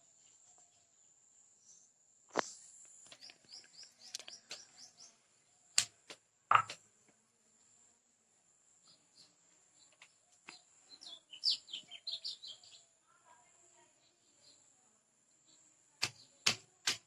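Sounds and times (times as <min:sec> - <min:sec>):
sharp knocks: 0:06.5 - 0:06.8.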